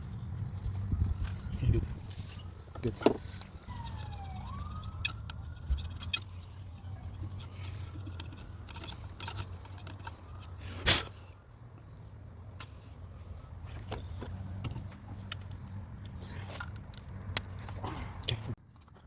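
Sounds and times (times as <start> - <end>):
metallic clicks of tools: 7.3 - 10.5.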